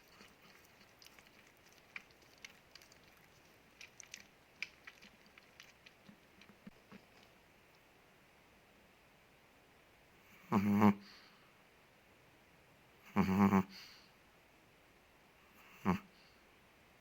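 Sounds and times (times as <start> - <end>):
faint clicks and mouth smacks: 0.0 - 7.9.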